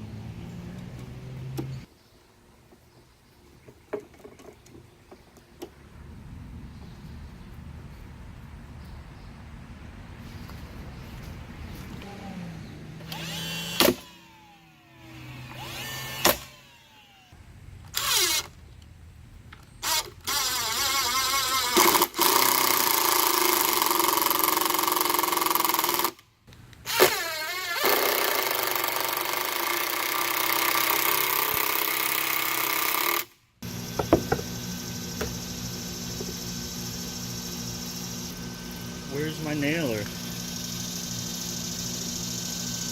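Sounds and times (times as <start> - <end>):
power tool running under load: 12.0 - 17.3, 19.8 - 26.2, 26.9 - 42.9
motor spinning down: 12.0 - 17.4, 26.9 - 42.9.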